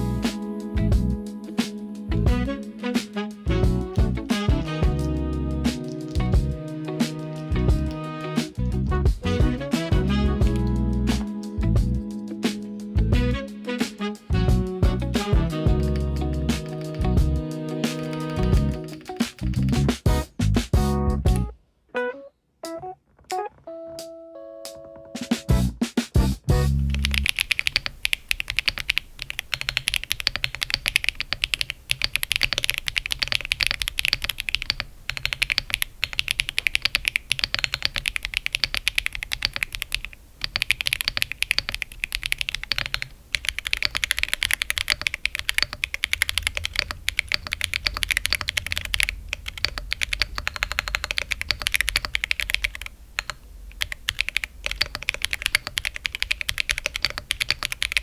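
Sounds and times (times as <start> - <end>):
typing on mechanical keyboard: 10.4 - 11.4, 15.7 - 17.1, 18.0 - 19.9, 26.8 - 58.0.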